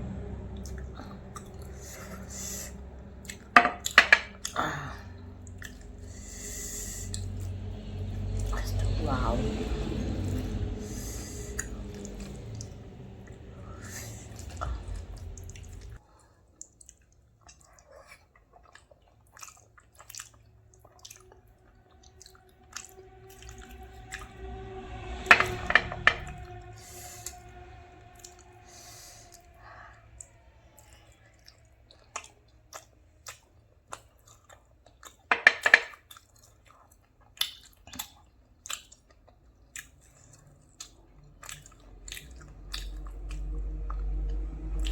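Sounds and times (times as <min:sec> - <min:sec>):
low hum: 0:00.0 - 0:16.1, 0:20.0 - 0:33.5, 0:40.0 - 0:44.9
close chewing and mouth sounds: 0:00.0 - 0:25.2, 0:26.6 - 0:35.3, 0:35.9 - 0:44.9.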